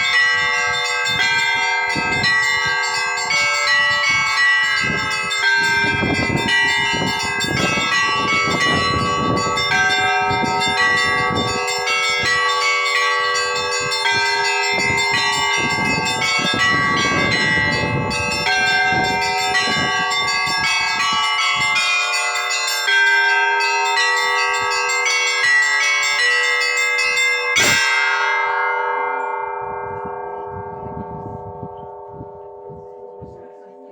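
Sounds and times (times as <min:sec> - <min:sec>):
church bells pealing: 0:00.0 - 0:33.9.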